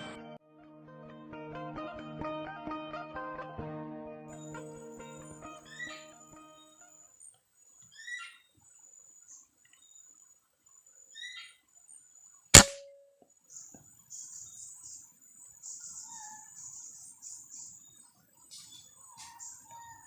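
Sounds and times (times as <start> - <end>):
air rifle shot: 12.6 - 13.0.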